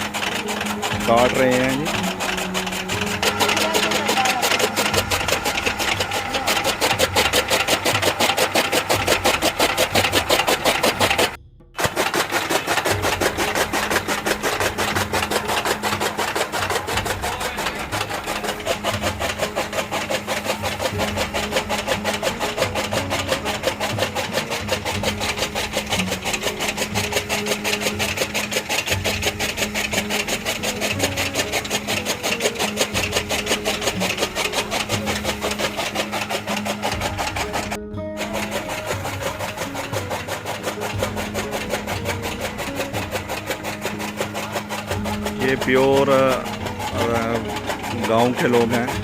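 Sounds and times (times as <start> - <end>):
chaff cutter blades clattering: 0.0 - 49.0.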